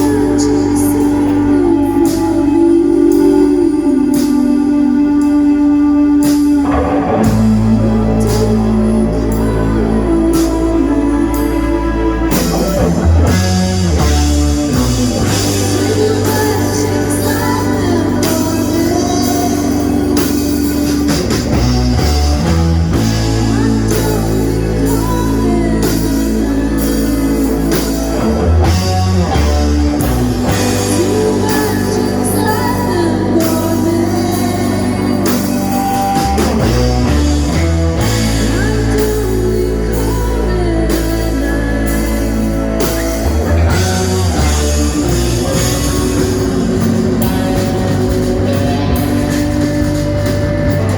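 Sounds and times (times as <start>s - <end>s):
person singing: 0.0s - 50.9s
rock band playing: 0.0s - 50.9s.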